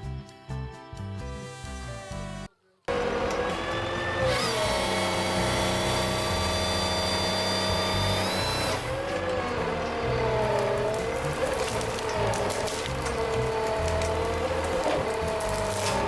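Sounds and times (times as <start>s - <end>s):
chainsaw engine at high revs: 2.9s - 16.0s.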